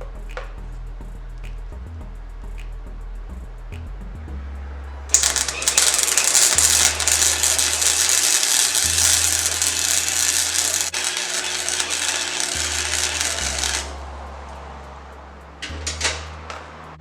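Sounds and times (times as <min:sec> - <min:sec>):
arc welder crackling: 0:05.1 - 0:16.8.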